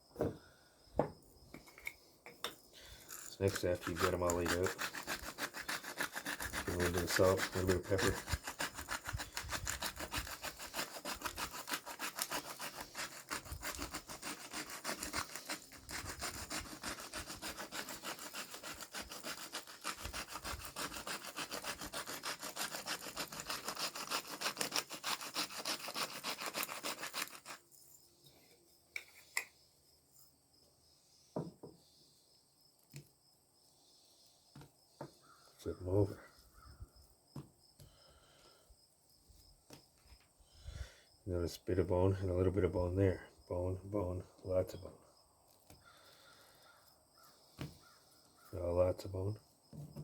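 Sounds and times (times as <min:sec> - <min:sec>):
spice grinder rasping: 0:03.0 - 0:27.6.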